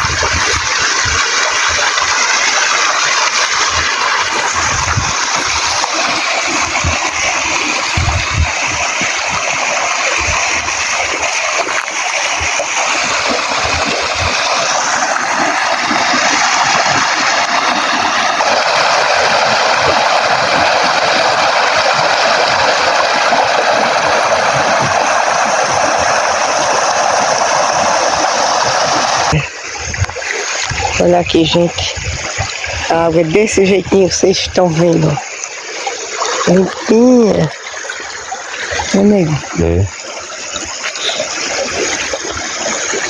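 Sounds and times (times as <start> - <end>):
river water rushing: 0.0 - 43.0
low thuds: 7.9 - 8.6.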